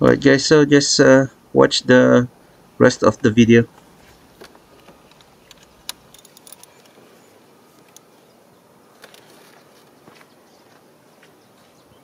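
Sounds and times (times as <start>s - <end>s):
hand tools clicking and tapping: 3.8s - 7.0s.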